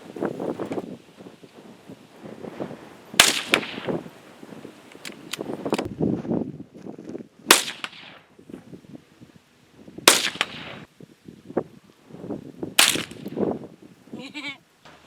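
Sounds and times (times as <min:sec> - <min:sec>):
rifle shots with echo: 0:03.2 - 0:04.0, 0:07.5 - 0:08.2, 0:10.1 - 0:10.9, 0:12.8 - 0:13.3.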